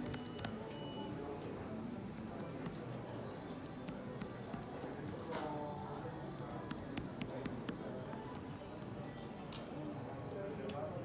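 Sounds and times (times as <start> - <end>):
laptop keyboard clicks: 0.0 - 0.6
faint background music: 0.0 - 11.0.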